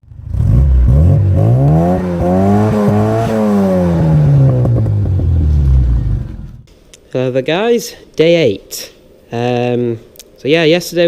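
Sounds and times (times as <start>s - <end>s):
car engine revving: 0.0s - 6.7s.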